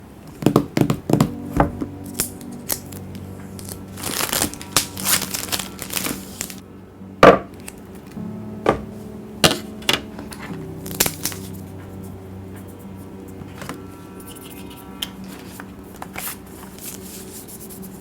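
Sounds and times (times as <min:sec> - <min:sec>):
packaging rustling and sliding: 0:02.5 - 0:06.6, 0:15.3 - 0:17.8.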